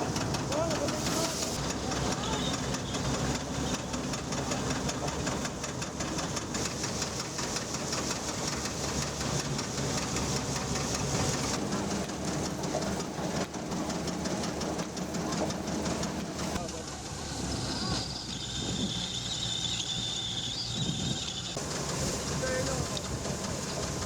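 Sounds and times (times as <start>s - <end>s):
engine running: 0.0s - 24.0s
hiss of machinery: 0.2s - 11.6s.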